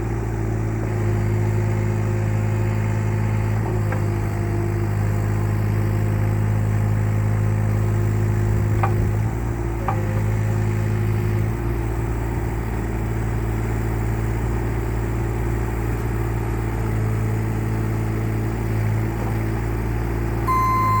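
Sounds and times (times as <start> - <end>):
diesel excavator engine running: 0.0 - 21.0
steady high beep: 20.5 - 21.0.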